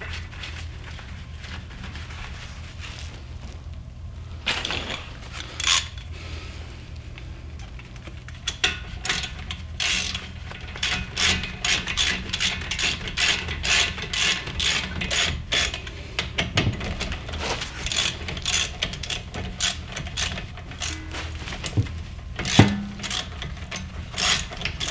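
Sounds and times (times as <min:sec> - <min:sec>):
ratchet wrench clicking: 0:22.4 - 0:23.4.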